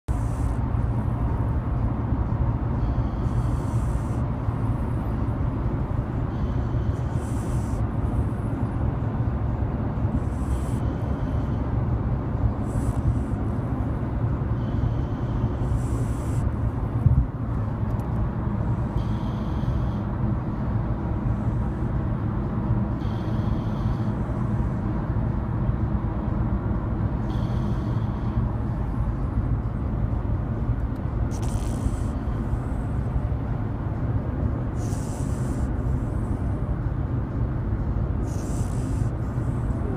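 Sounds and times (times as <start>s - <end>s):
man and dog snoring: 0.1s - 1.3s, 2.8s - 5.1s, 6.3s - 8.5s, 10.1s - 11.6s, 12.6s - 13.6s, 14.6s - 16.6s, 18.9s - 20.1s, 23.0s - 24.2s, 27.3s - 28.4s, 31.3s - 33.0s, 34.7s - 36.3s, 38.2s - 39.9s.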